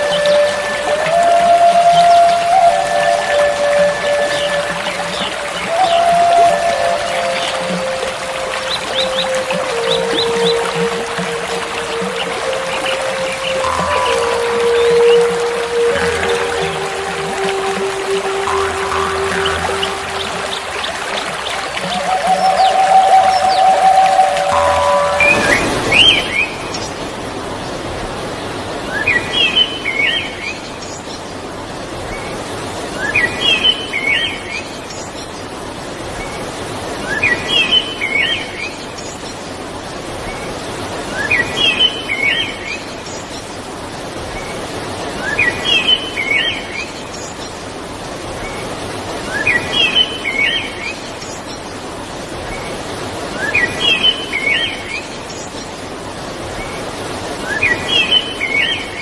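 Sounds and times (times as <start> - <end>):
bird singing: 0.0 - 27.0
river water rushing: 0.0 - 59.0.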